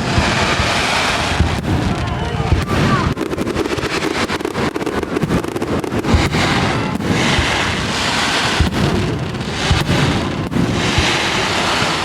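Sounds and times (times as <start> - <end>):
fireworks bangs and crackles: 0.0 - 12.0
steady rushing hiss: 0.0 - 12.0.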